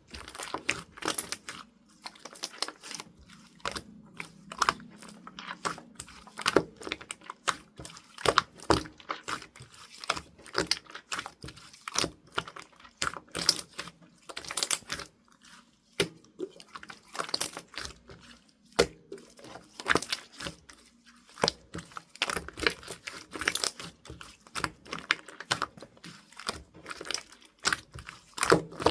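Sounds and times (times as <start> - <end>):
crinkling and crackling: 0.0 - 28.9.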